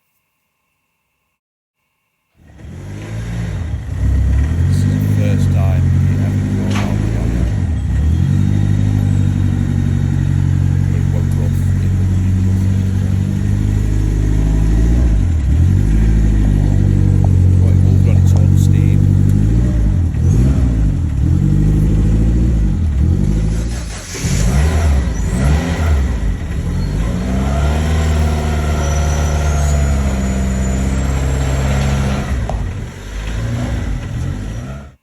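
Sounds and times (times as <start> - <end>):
car engine revving roughly: 2.4 - 35.0.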